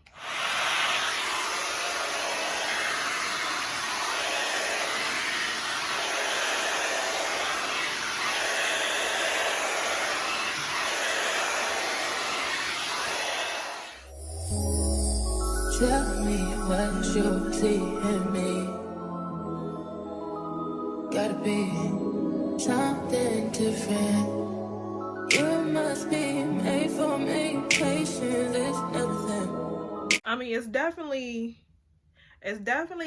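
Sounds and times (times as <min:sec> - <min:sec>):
blow dryer running: 0:00.0 - 0:18.8.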